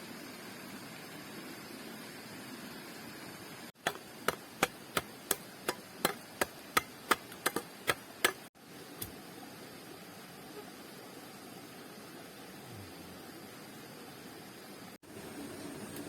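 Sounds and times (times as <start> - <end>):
tool knocking on wood: 3.8 - 8.5.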